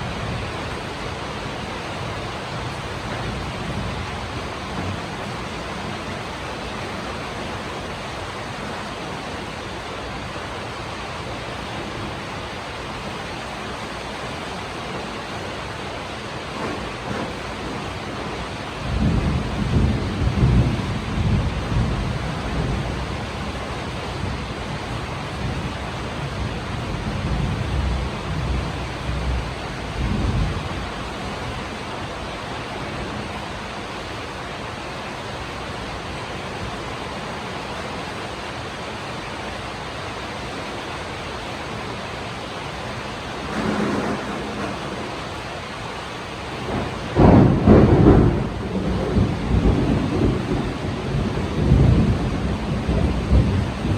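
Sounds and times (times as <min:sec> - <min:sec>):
rain hiss: 0:00.0 - 0:53.9
rolling thunder: 0:16.6 - 0:31.7, 0:43.3 - 0:45.6, 0:46.5 - 0:53.9.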